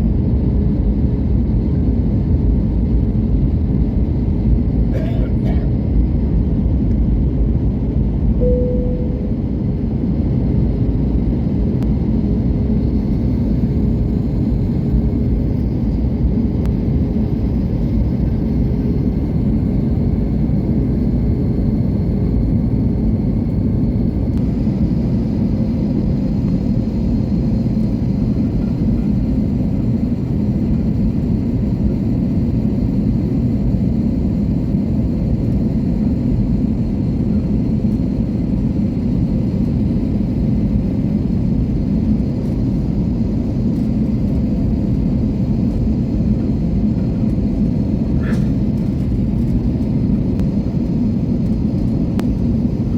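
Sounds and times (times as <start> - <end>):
airliner engine rumble in cabin: 0.0 - 52.9
faint steady tone: 8.4 - 9.8.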